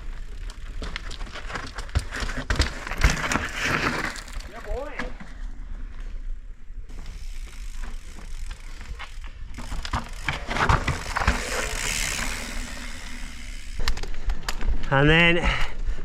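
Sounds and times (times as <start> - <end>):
bike rattling and knocking: 0.0 - 5.2, 6.9 - 14.9
bike tyres crunching on dirt: 0.0 - 15.6.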